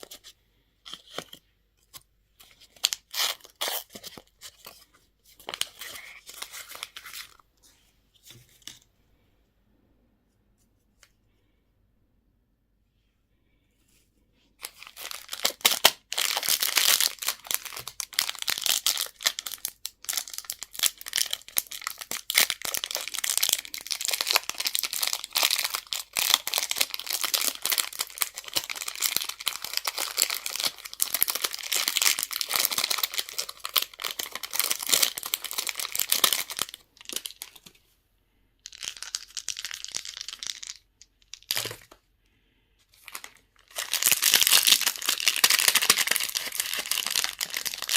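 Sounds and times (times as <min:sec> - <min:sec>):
packaging crinkling and tearing: 0:02.4 - 0:04.8, 0:14.6 - 0:37.7, 0:38.7 - 0:41.9, 0:43.0 - 0:47.9.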